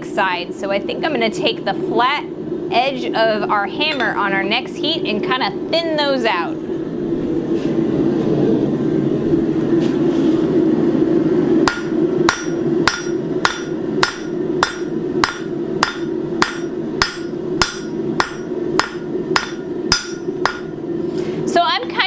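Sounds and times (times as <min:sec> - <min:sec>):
steady rushing hum: 0:00.0 - 0:22.0
hammer ringing on anvil: 0:11.7 - 0:20.8.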